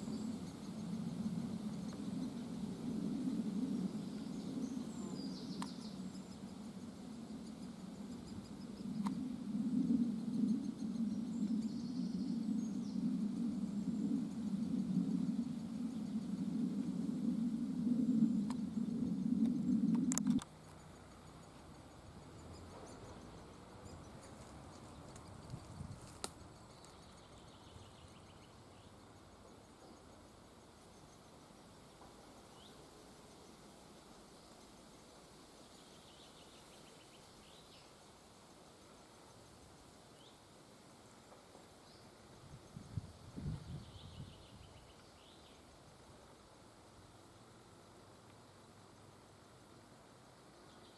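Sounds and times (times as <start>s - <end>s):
steady low hum: 0.0s - 32.5s
sharp clicks: 19.9s - 20.5s.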